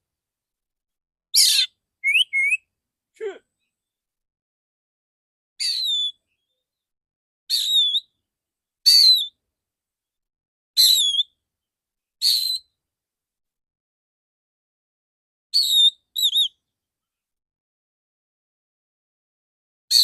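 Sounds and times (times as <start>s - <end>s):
bird whistled calls: 1.4s - 2.6s, 5.6s - 6.2s, 7.5s - 8.1s, 8.9s - 9.3s, 10.8s - 11.3s, 15.6s - 16.6s.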